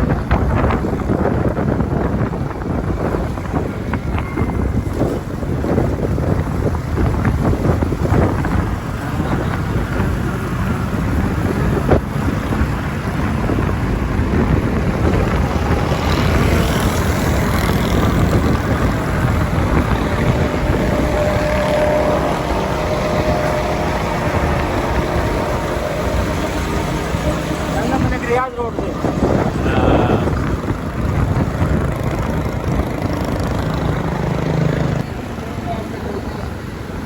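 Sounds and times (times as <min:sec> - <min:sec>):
road and traffic rumble: 0:00.0 - 0:37.0
wind buffeting microphone: 0:00.0 - 0:37.0.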